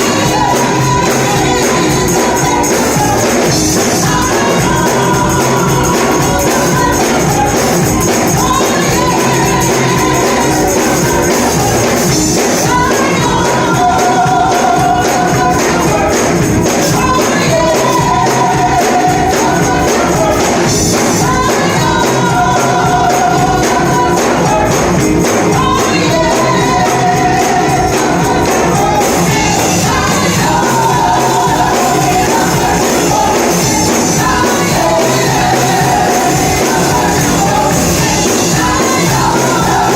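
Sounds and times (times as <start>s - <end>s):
choir singing: 0.0s - 39.9s
gospel band playing: 0.0s - 39.9s
tambourine shaking: 0.0s - 39.9s.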